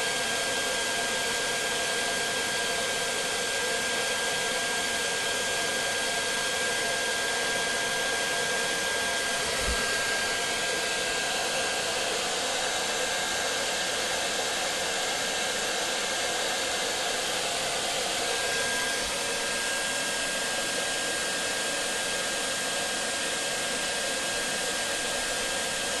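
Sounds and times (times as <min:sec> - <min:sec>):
hair dryer running: 0:00.0 - 0:26.0.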